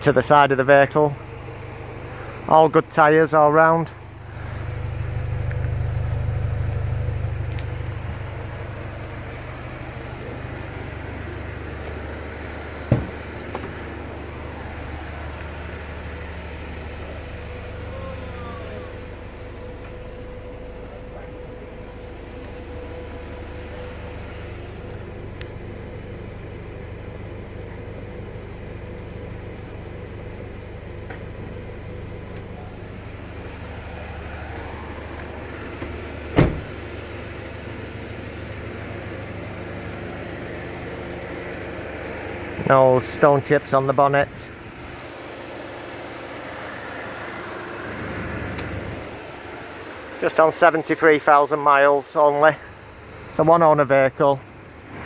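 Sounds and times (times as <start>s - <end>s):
vehicle engine rumbling: 0.0s - 55.0s
sharp knock: 12.9s - 13.2s.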